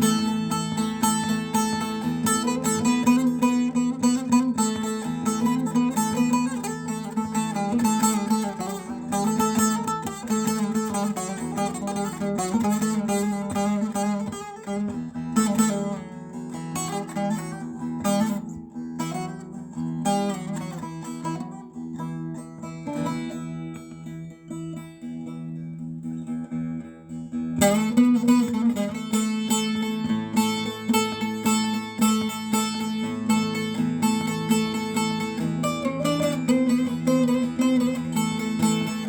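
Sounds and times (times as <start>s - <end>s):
plucked string instrument melody: 0.0s - 39.0s.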